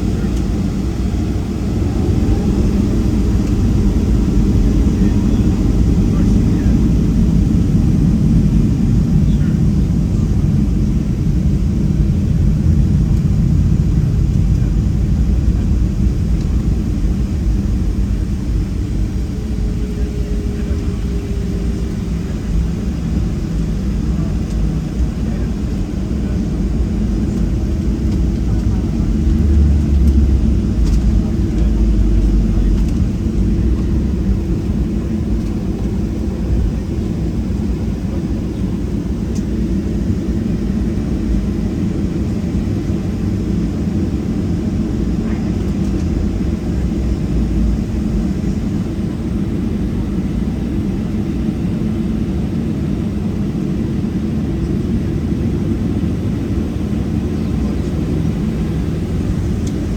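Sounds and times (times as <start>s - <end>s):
aircraft cabin engine roar: 0.0s - 59.9s.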